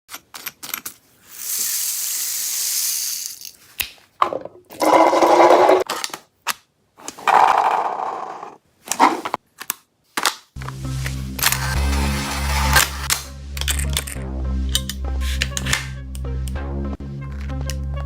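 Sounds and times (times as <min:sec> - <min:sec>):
handling clicks: 0:13.1 - 0:16.6.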